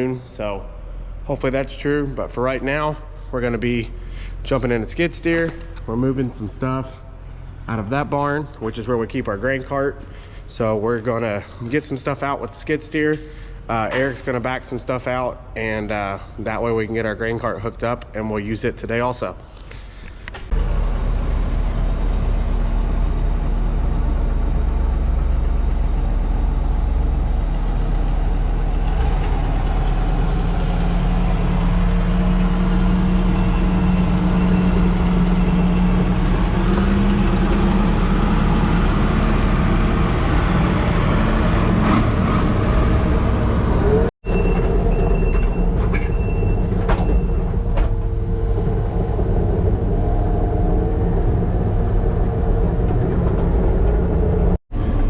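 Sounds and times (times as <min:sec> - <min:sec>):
diesel engine running under load: 0:03.1 - 0:07.8, 0:10.0 - 0:11.8, 0:19.6 - 0:55.0
knocks and clanks: 0:44.3 - 0:49.7.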